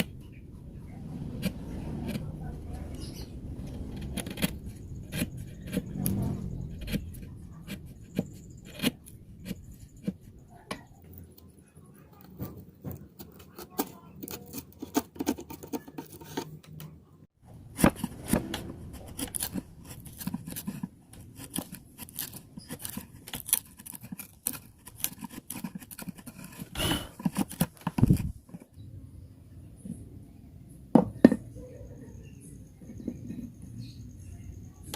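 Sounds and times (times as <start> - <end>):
hand tools working wood: 17.7 - 28.5.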